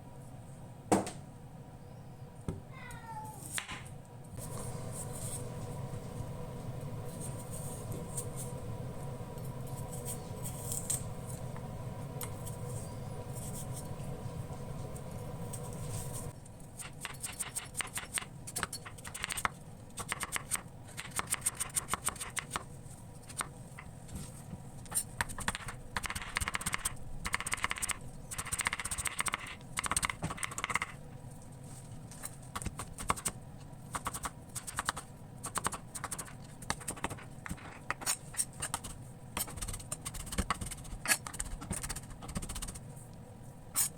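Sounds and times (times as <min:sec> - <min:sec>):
steady hum: 0:03.5 - 0:19.1.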